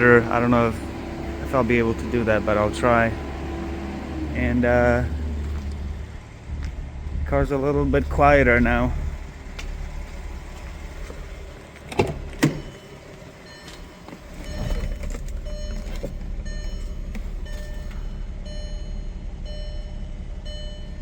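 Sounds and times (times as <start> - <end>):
car exhaust idling rumble: 0.0 - 21.0
short electronic beeps: 12.6 - 21.0.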